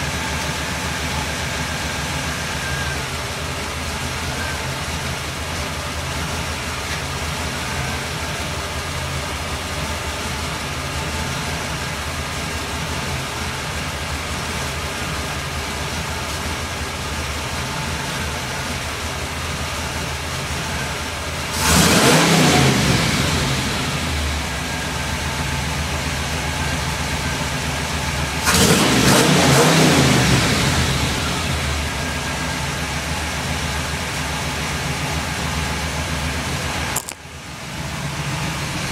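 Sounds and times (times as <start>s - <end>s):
engine idling: 0.0s - 38.9s
engine revving: 21.5s - 24.5s, 28.4s - 32.0s.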